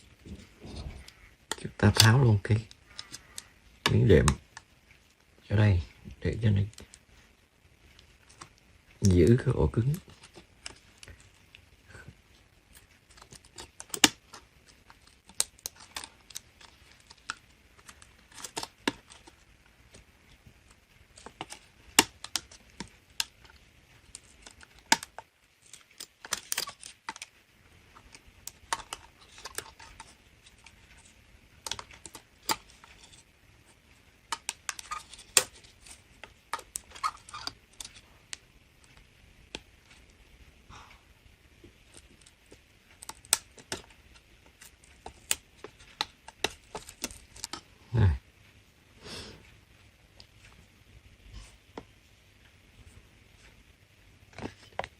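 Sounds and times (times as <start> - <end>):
laptop parts clicking and tapping: 12.7 - 20.1, 21.1 - 27.3, 31.6 - 33.2, 34.2 - 40.0, 41.8 - 47.7.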